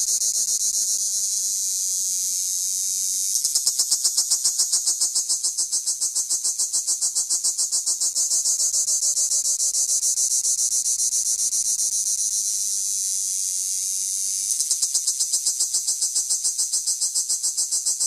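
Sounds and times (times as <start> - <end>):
cicada pulsing buzz: 0.0 - 18.0.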